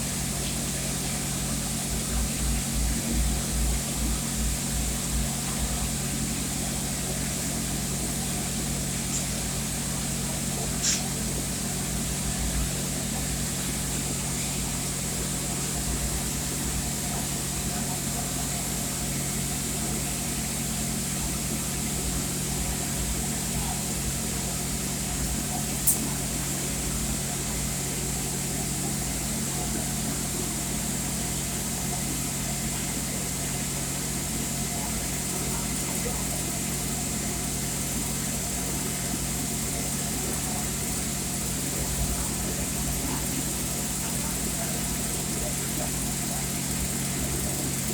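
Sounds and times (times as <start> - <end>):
welding equipment hum and hiss: 0.0 - 47.9
sharp click: 10.8 - 11.1, 25.8 - 26.1.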